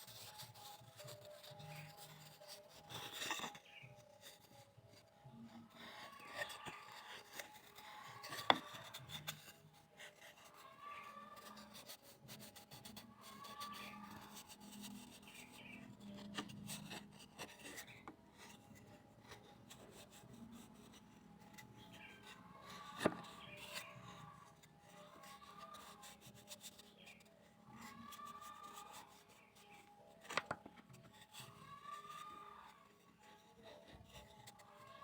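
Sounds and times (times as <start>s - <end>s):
wood rubbing and scraping: 5.8s - 9.5s, 21.5s - 34.7s.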